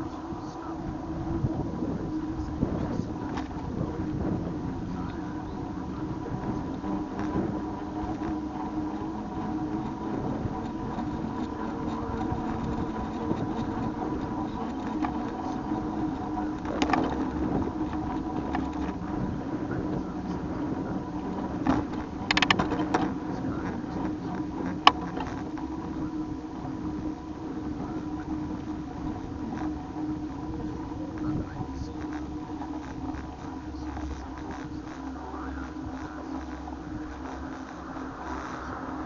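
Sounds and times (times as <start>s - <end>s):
bike riding hum: 0.0s - 39.0s
short rattles: 20.0s - 26.1s.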